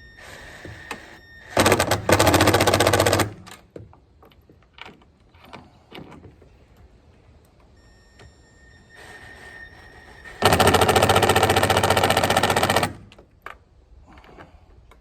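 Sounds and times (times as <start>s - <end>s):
impact driver rattling: 1.6s - 3.6s, 10.4s - 13.2s.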